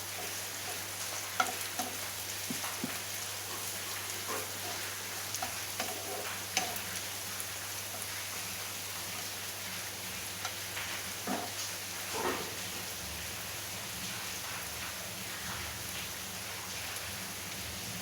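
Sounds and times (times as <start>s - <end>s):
onions sizzling in oil: 0.0s - 18.0s
spoon scraping pan: 0.1s - 3.0s, 3.6s - 7.0s, 10.4s - 11.6s.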